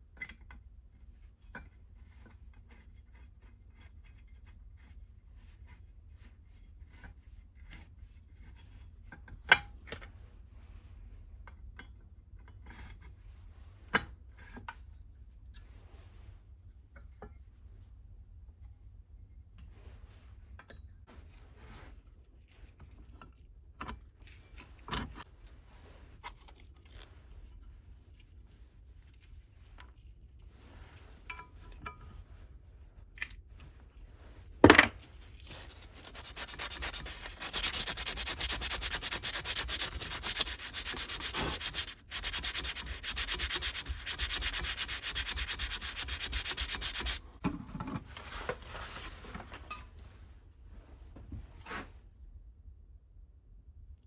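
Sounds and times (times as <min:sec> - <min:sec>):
blade abrasive rubbing: 0:36.1 - 0:47.2.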